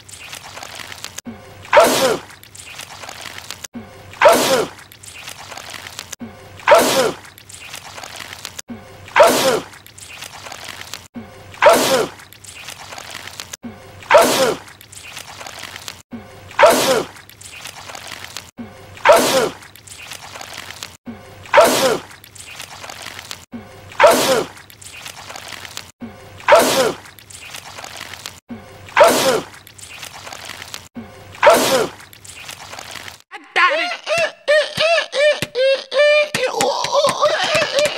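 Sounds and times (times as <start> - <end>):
man sneezing: 1.7 - 2.2, 9.2 - 9.7, 11.6 - 12.2, 21.6 - 22.0, 24.0 - 24.5, 29.0 - 29.5, 31.4 - 32.0, 33.6 - 37.9.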